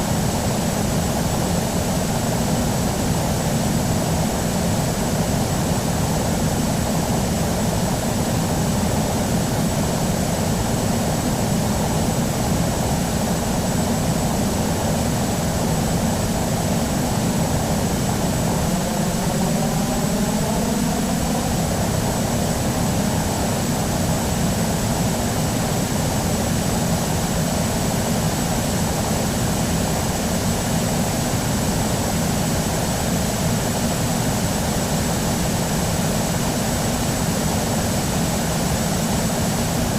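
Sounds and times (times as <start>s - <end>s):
jet engines running: 0.0s - 39.9s
brief rising whine: 18.2s - 23.1s.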